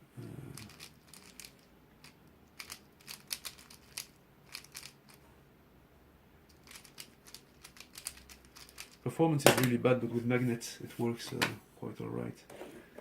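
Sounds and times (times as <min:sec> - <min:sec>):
puzzle cube clicking: 0:00.6 - 0:05.2.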